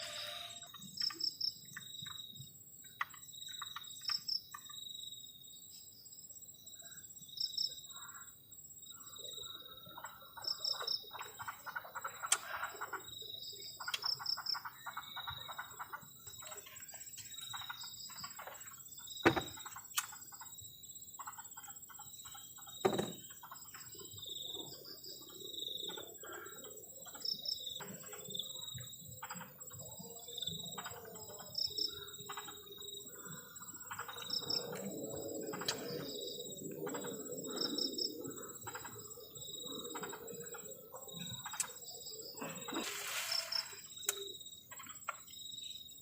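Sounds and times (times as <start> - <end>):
frogs trilling: 0.0 - 5.6, 6.5 - 46.0
insects trilling: 0.0 - 46.0
paired insect chirps: 0.0 - 46.0
sharp knocks: 22.8 - 23.2.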